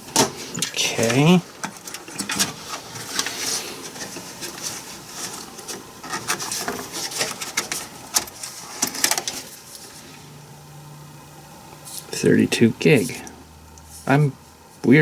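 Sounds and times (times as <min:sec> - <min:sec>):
computer parts clicking and rustling: 0:00.0 - 0:10.0
faint steady hum: 0:00.0 - 0:15.0.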